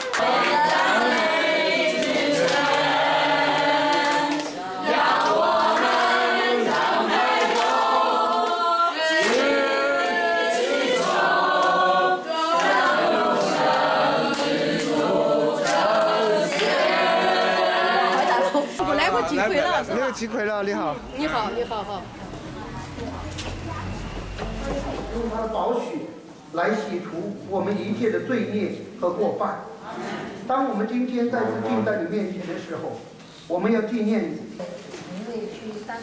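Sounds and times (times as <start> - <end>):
choir singing a hymn: 0.0 - 20.2.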